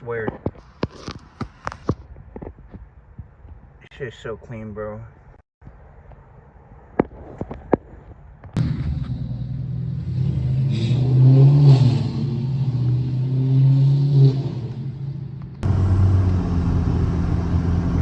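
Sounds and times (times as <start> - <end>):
car engine accelerating: 8.6 - 18.0.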